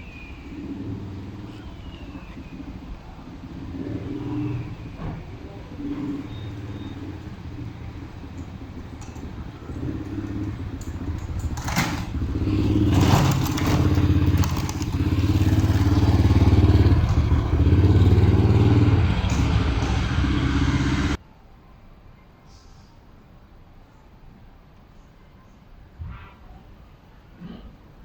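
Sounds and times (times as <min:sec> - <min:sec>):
motorcycle engine revving: 0:03.4 - 0:05.0, 0:05.7 - 0:21.2
brief rattling: 0:08.4 - 0:16.0.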